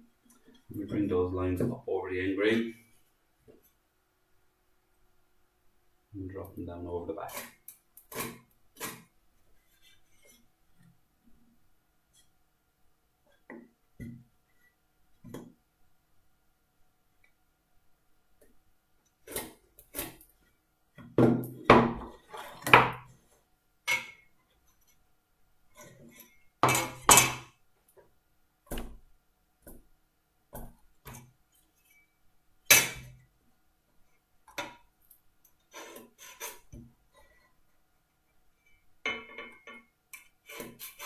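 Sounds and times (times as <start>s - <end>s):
tools and wood knocking on workbench: 21.0s - 23.1s, 26.6s - 27.5s, 39.1s - 39.9s.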